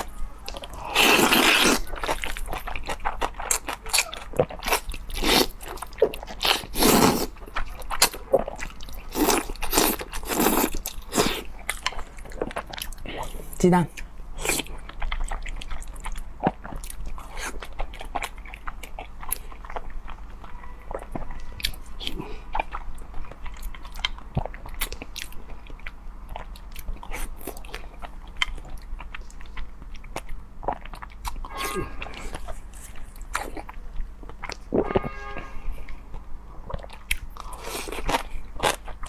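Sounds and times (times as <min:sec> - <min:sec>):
chewing and biting: 0:00.0 - 0:13.4, 0:14.0 - 0:34.8, 0:36.7 - 0:39.0.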